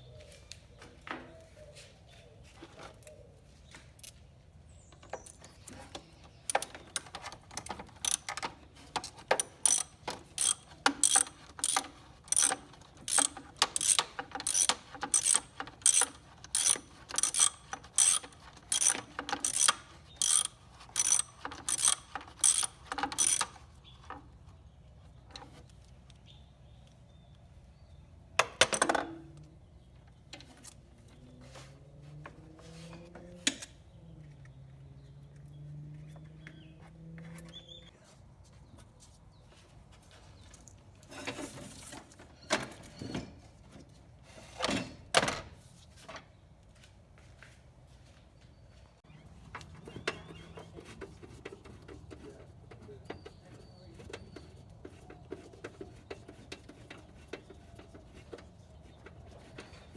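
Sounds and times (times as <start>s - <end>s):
hand ratchet clicking: 6.5s - 23.6s.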